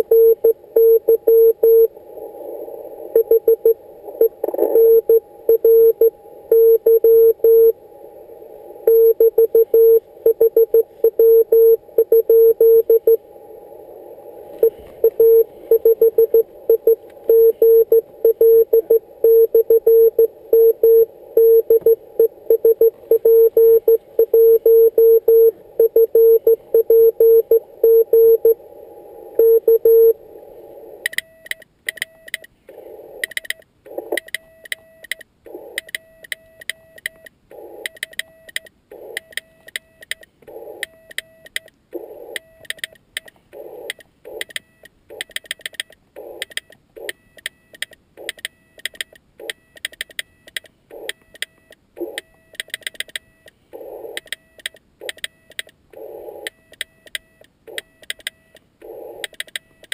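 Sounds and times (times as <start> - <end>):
faint sidetone: 0.0 - 1.9, 3.1 - 7.8, 8.8 - 13.2, 14.6 - 28.6, 29.4 - 30.2
morse code tone: 0.0 - 1.9, 3.2 - 7.8, 8.9 - 13.2, 14.6 - 28.6.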